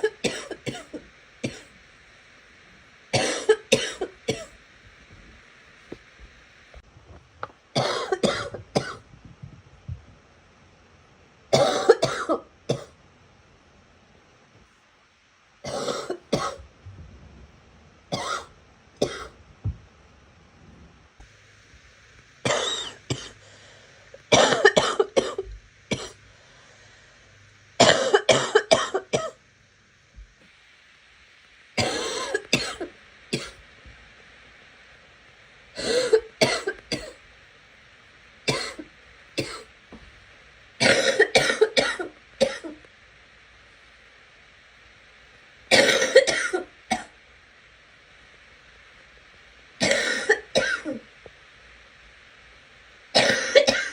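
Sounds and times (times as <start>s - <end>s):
girl coughing: 0.0s - 1.7s, 3.2s - 4.5s, 7.8s - 9.0s, 11.5s - 12.9s, 15.7s - 16.6s, 18.1s - 19.3s, 22.5s - 23.4s, 24.3s - 26.2s, 31.8s - 33.6s, 35.8s - 37.2s, 38.5s - 39.7s, 40.8s - 42.8s, 45.7s - 47.1s, 49.8s - 51.0s, 53.2s - 53.9s.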